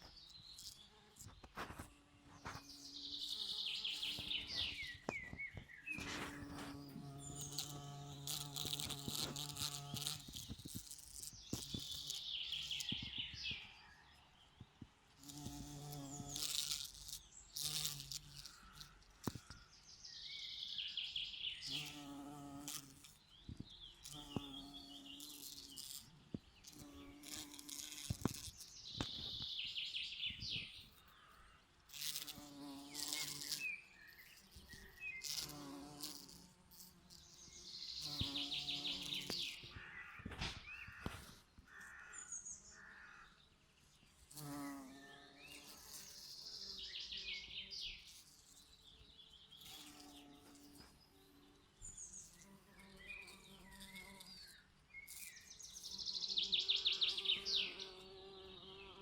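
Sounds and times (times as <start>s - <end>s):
bees buzzing: 0.5s - 13.1s, 31.9s - 41.4s
songbird trilled song: 2.5s - 14.7s.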